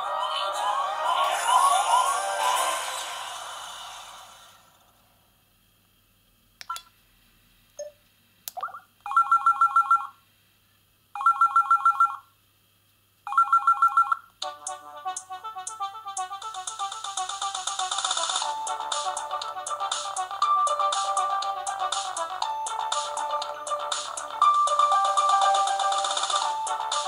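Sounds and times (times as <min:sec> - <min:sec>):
short beeps and clicks: 0:06.6 - 0:06.9
phone ringtone: 0:09.1 - 0:10.1, 0:11.2 - 0:12.2, 0:13.3 - 0:14.9, 0:16.6 - 0:27.0
electronic ringtone melody: 0:16.4 - 0:27.0.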